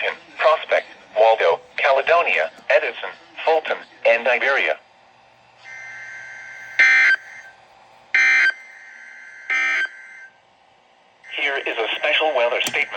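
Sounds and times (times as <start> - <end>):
faint radio hiss: 0.0 - 5.7, 10.4 - 12.9.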